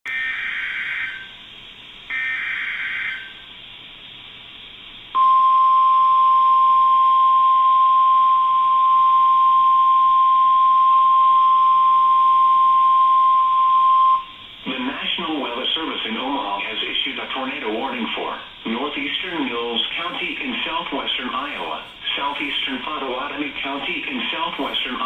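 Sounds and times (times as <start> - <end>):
steady alarm tone: 0.1 - 1.5, 2.1 - 3.6, 5.2 - 14.5
radio hiss: 14.1 - 25.0.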